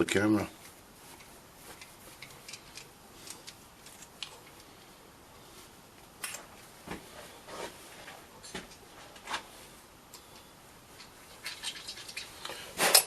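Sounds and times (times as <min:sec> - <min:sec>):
metal parts and tools clicking: 0:01.8 - 0:04.6.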